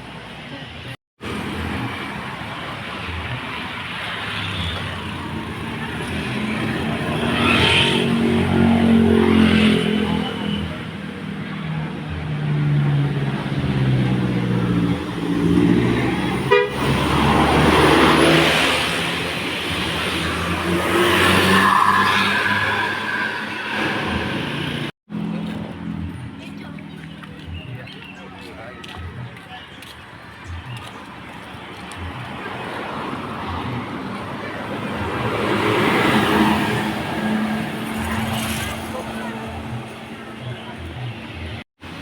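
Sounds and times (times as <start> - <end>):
musical air horn playing a tune: 16.5 - 16.9.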